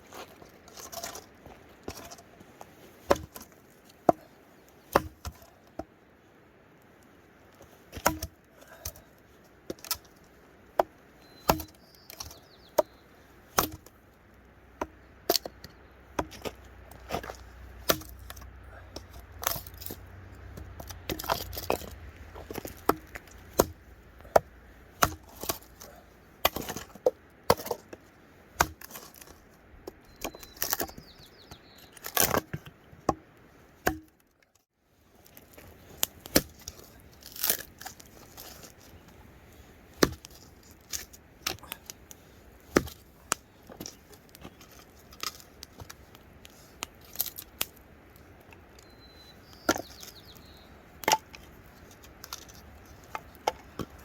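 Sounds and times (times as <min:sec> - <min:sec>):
wood being chopped: 0:03.1 - 0:03.4, 0:04.9 - 0:05.9, 0:07.9 - 0:09.0, 0:10.8 - 0:12.9, 0:13.6 - 0:13.9, 0:14.8 - 0:18.5, 0:20.5 - 0:27.8, 0:28.6 - 0:29.3, 0:32.0 - 0:33.2, 0:33.8 - 0:34.1, 0:40.0 - 0:40.3, 0:42.7 - 0:44.0.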